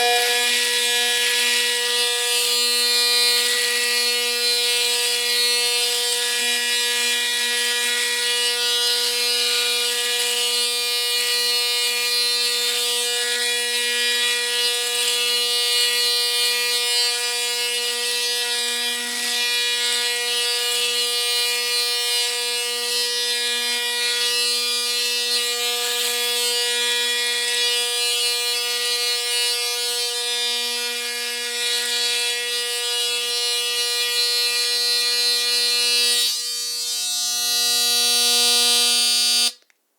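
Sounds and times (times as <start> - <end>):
electric shaver buzzing: 0.0 - 1.2, 32.0 - 39.6.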